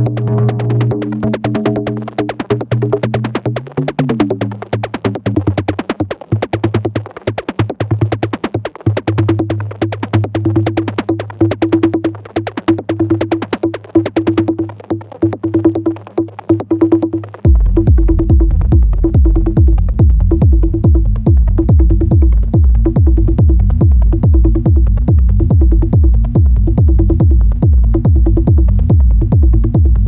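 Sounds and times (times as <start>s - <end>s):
downward sliding pitch: 0.0s - 4.6s
low synth drone: 0.0s - 4.6s, 17.5s - 30.0s
stuttering chopped tone: 0.0s - 5.5s, 13.7s - 30.0s.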